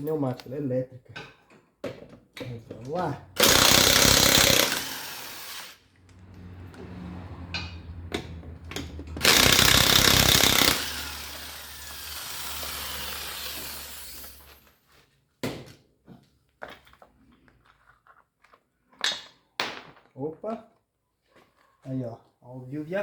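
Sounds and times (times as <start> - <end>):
electric impact wrench hammering: 3.4 - 5.8, 8.7 - 14.6.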